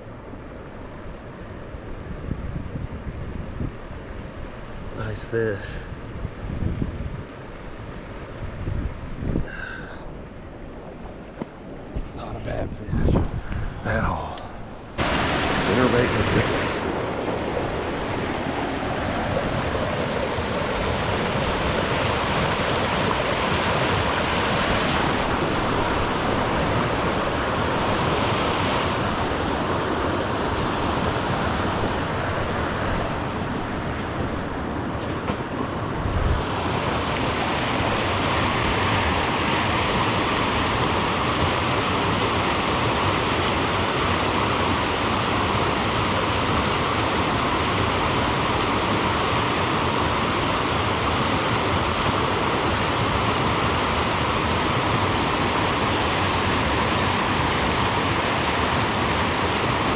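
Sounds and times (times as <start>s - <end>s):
creek rapids rushing: 15.0s - 59.9s.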